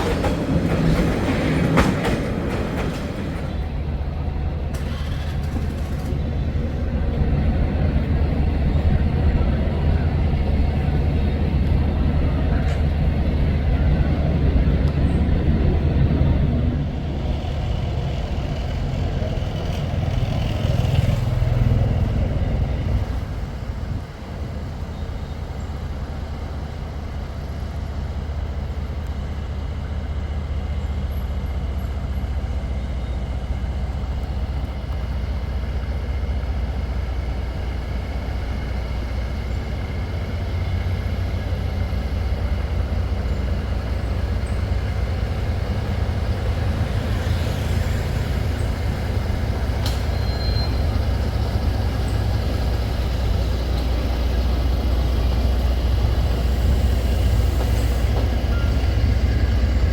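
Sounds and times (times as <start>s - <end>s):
locomotive engine rumble: 0.0s - 59.9s
brief high squeak: 49.9s - 50.9s.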